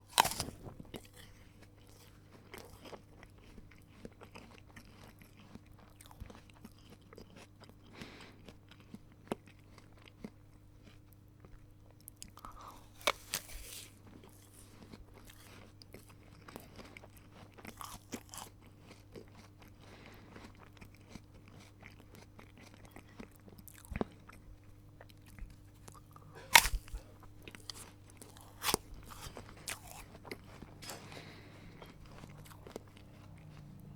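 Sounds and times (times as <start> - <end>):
apple bites snapping: 0.0 - 1.3, 12.8 - 13.9, 26.4 - 30.1
crunchy chewing: 0.0 - 33.9
faint steady hum: 0.0 - 33.9.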